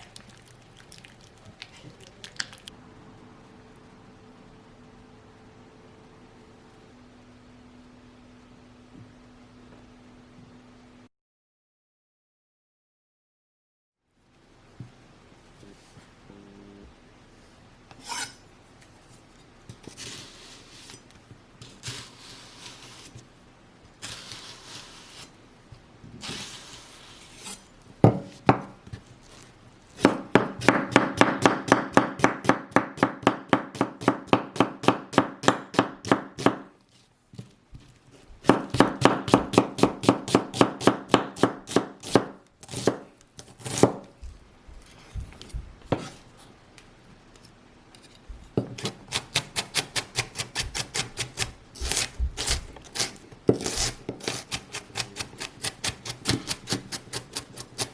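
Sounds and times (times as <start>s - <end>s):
knife chopping on cutting board: 28.0s - 28.8s, 30.0s - 36.7s, 38.4s - 44.1s, 45.9s - 46.2s, 48.6s - 57.9s.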